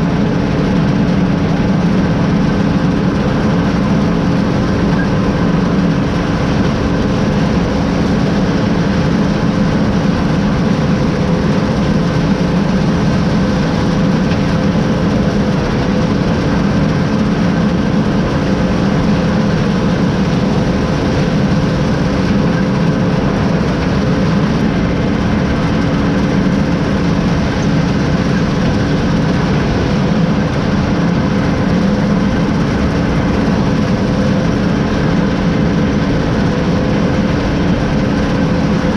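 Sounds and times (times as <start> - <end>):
combine harvester engine drone: 0.0 - 38.9
steady whining tones: 0.0 - 38.9.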